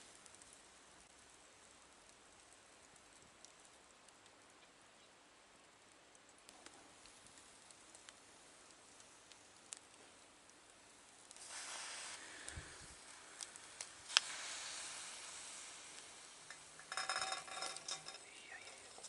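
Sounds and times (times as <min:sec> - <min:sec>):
food sizzling on a grill: 0:00.0 - 0:05.8, 0:06.4 - 0:19.0
short rattle: 0:16.8 - 0:19.0.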